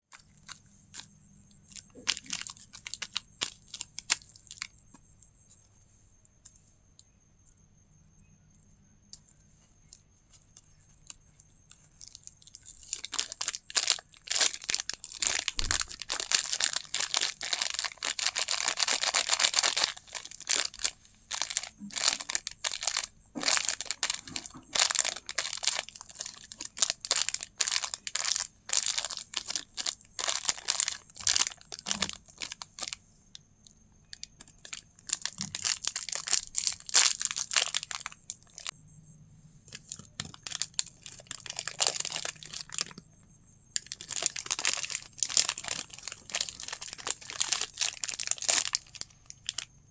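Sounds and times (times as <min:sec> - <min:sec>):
candy wrapper crinkling and tearing: 0:00.1 - 0:04.8, 0:11.7 - 0:33.0, 0:34.1 - 0:38.7, 0:39.7 - 0:43.0, 0:43.7 - 0:49.7.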